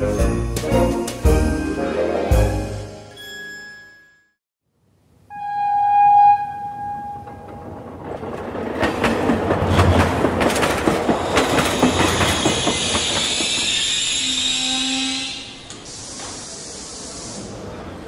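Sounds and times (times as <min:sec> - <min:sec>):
wheels clacking over rail joints: 0:07.1 - 0:13.6
train horn blast: 0:14.2 - 0:15.6.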